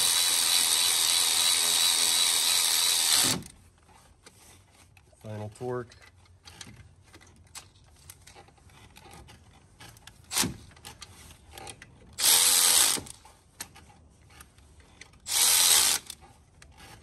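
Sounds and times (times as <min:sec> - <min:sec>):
cordless power tool running: 0:00.0 - 0:03.4.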